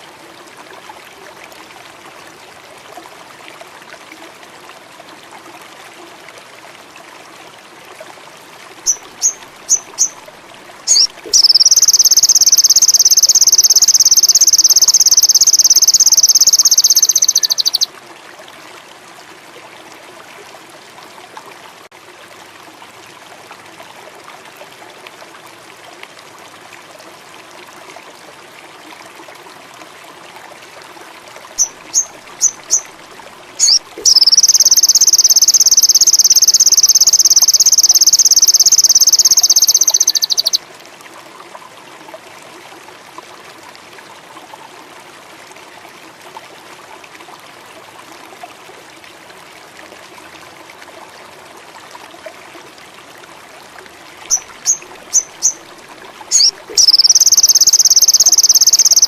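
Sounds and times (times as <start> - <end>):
faint steady hiss: 0.0 - 59.0
songbird chips and rapid trill: 10.9 - 17.9, 33.6 - 40.6, 56.3 - 59.0.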